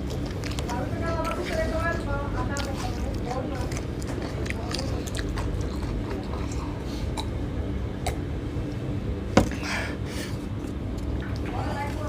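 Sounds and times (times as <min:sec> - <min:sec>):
eating noises: 0:00.0 - 0:12.0
steady low hum: 0:00.0 - 0:12.0.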